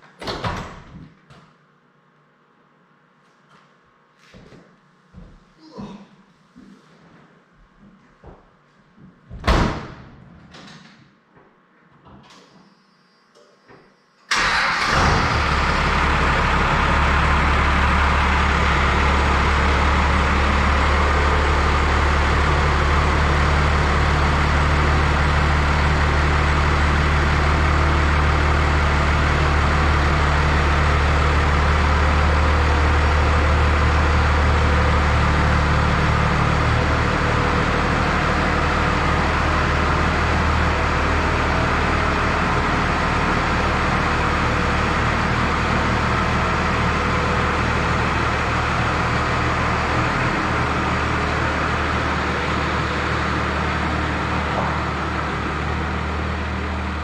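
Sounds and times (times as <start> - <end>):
pickup engine running: 14.4 - 57.0.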